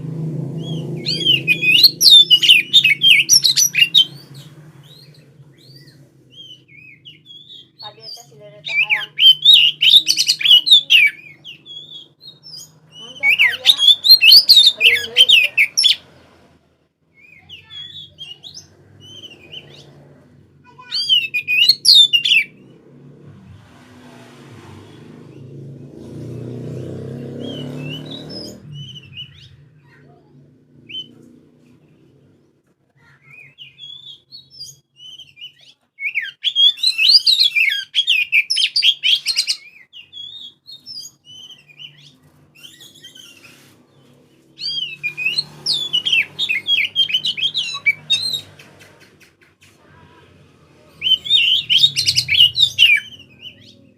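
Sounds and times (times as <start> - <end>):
bird singing whistled phrases: 4.9 - 16.0, 20.9 - 22.5, 33.3 - 43.3, 51.0 - 53.8.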